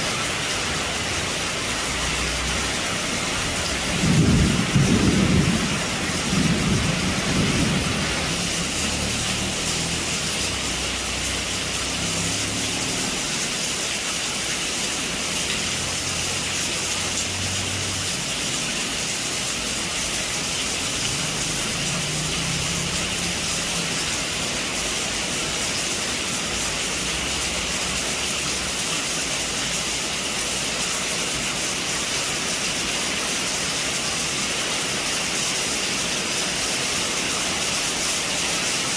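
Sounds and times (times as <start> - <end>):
heavy rain on a roof: 0.0 - 38.9
thunder rumble: 3.6 - 9.2.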